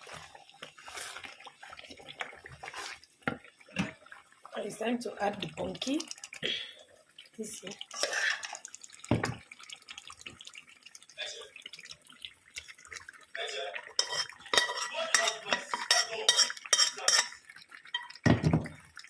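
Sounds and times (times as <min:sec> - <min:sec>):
metal spoon clanking in a pot: 0:14.0 - 0:18.2.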